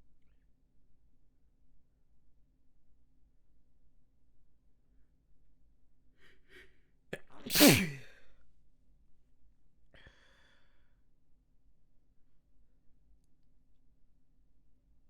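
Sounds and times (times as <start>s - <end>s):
person sneezing: 7.2s - 8.2s
short catching breaths: 7.4s - 8.1s.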